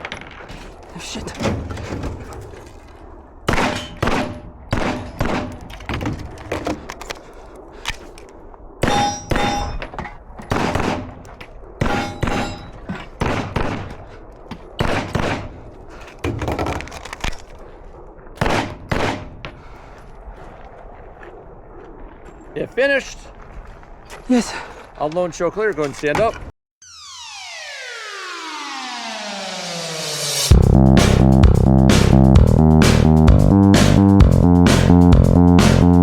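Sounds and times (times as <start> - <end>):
gunshots in quick pairs: 3.5 - 5.6, 10.5 - 11.2, 11.8 - 14.0, 14.8 - 15.6, 18.4 - 19.4
steel targets clanging: 8.8 - 10.3, 11.8 - 13.2.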